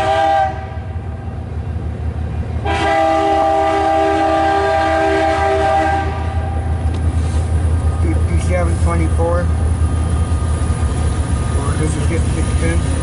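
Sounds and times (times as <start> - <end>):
locomotive air horn chord: 0.0 - 1.0, 2.6 - 6.7
low rumble of train: 0.0 - 13.0.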